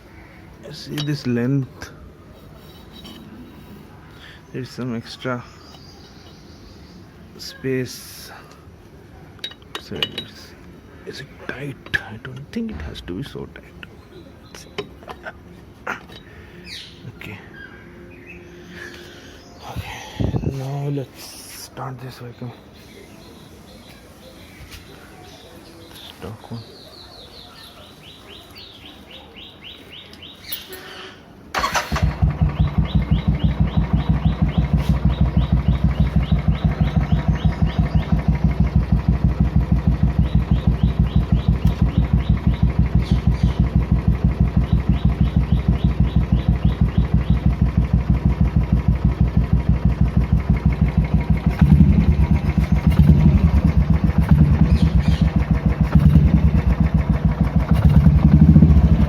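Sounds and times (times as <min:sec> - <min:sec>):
engine revving: 0:31.6 - 0:59.0
motorcycle engine idling: 0:31.6 - 0:59.0.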